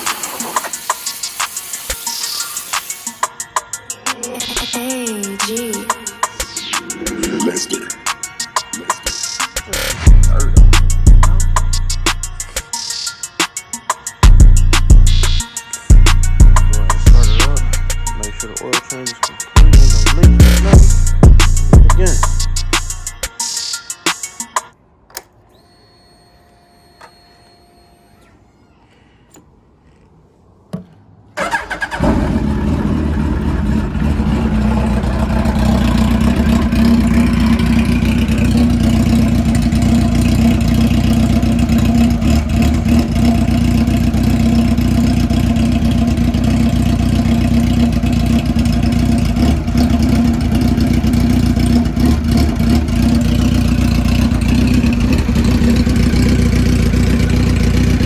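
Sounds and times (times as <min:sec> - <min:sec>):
motorcycle engine starting and idling: 0:31.3 - 0:58.0.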